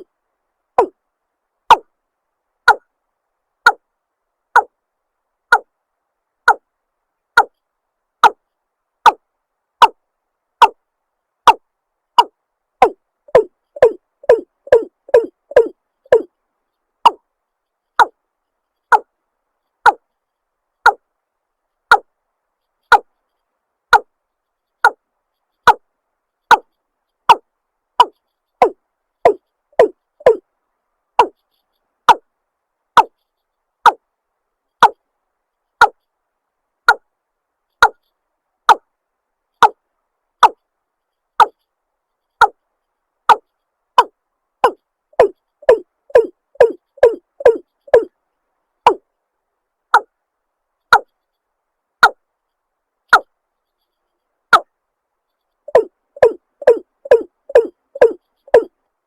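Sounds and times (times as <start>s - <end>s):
bird calling hollow kok notes: 0.8s - 1.0s, 11.4s - 16.3s, 28.0s - 30.4s, 43.3s - 48.2s, 55.3s - 58.8s.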